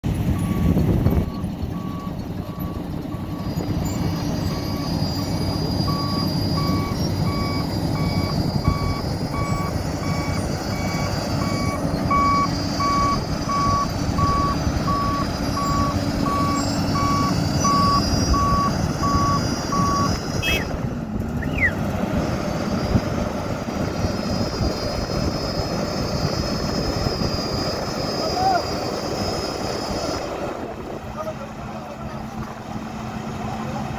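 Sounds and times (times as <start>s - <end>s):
diesel machinery running: 0.0s - 33.9s
reversing alarm beeping: 0.4s - 20.7s.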